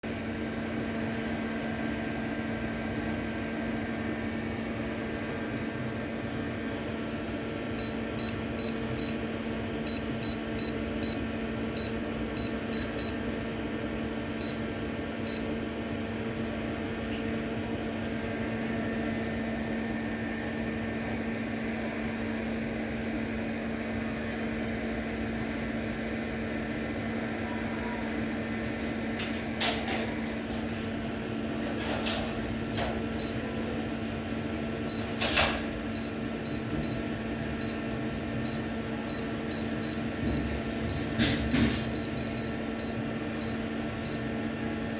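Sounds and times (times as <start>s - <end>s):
electrical machine hum: 0.0s - 44.9s
touch panel beeping: 7.8s - 13.3s, 14.4s - 15.6s, 38.4s - 41.1s, 41.8s - 44.2s.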